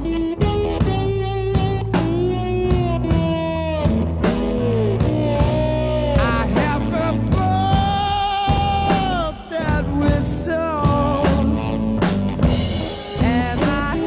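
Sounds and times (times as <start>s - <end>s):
bass and drums: 0.0s - 14.0s
person singing long notes: 6.0s - 11.8s, 13.0s - 14.0s.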